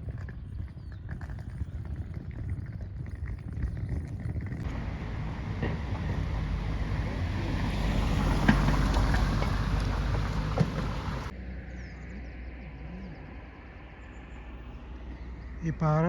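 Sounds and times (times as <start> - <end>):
wind buffeting microphone: 0.0 - 11.3.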